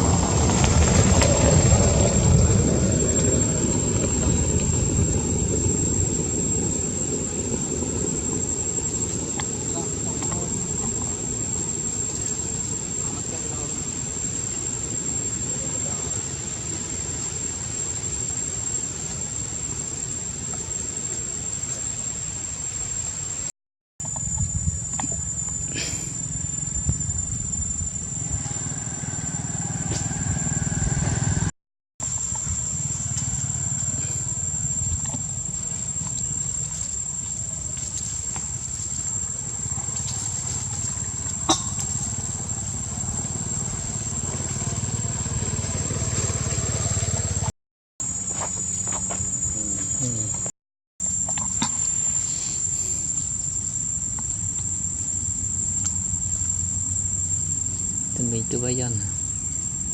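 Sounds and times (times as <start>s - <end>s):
low steady rumble: 0.0s - 23.4s, 24.0s - 47.5s
high whine: 0.0s - 59.9s
insects trilling: 0.0s - 59.9s
small engine running: 24.0s - 31.5s, 32.1s - 47.5s.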